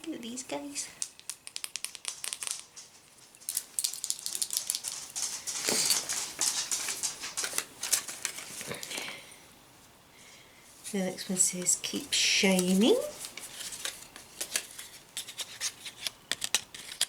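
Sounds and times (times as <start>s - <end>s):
paper and plastic crinkling: 1.9s - 9.2s, 11.9s - 17.0s.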